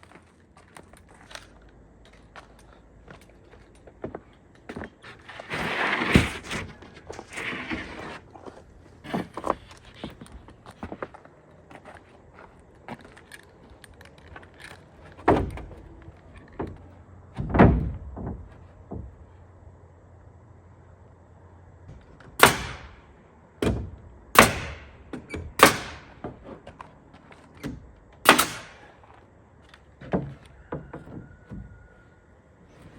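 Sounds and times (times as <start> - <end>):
objects knocking and thumping: 15.0 - 19.2.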